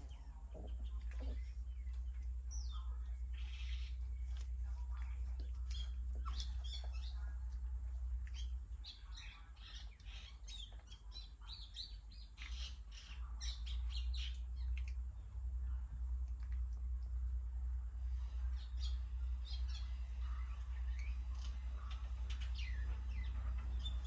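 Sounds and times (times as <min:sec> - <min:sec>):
puppies squeaking and whimpering: 0:00.0 - 0:01.8, 0:05.4 - 0:07.0
steady low hum: 0:00.0 - 0:24.0.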